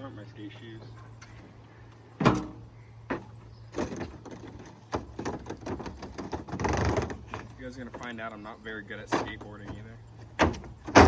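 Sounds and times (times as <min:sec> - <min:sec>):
skateboard hitting truck bed: 0:02.2 - 0:07.6, 0:09.0 - 0:11.0.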